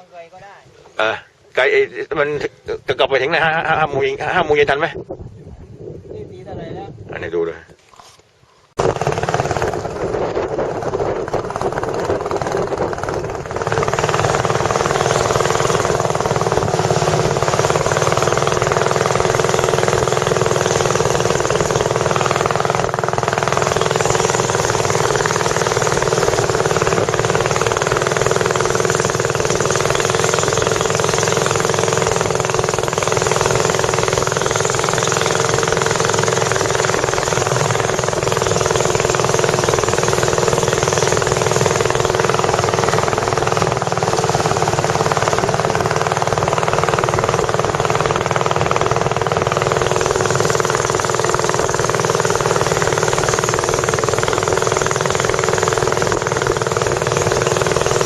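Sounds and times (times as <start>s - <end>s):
boat engine running: 0.0s - 5.0s, 7.4s - 58.0s.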